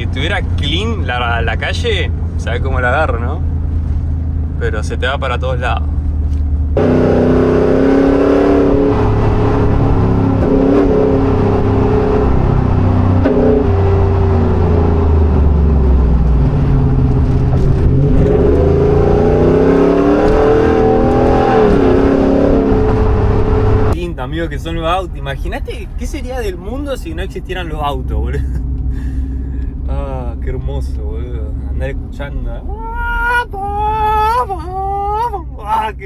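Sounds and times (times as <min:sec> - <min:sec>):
truck engine revving while driving: 0:00.0 - 0:24.0.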